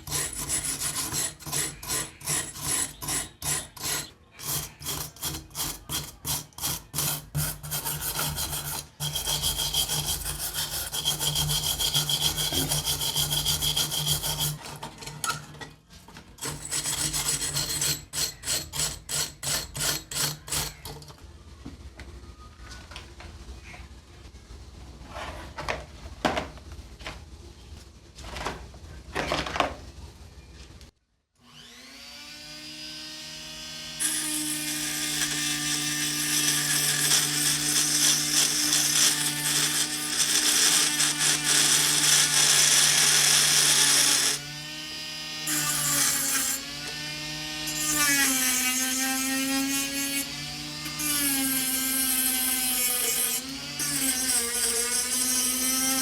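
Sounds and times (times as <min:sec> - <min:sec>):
knocks and clatters of handling: 0:14.6 - 0:16.4, 0:25.1 - 0:27.3, 0:28.2 - 0:29.9
electric power tool running: 0:31.4 - 0:47.9.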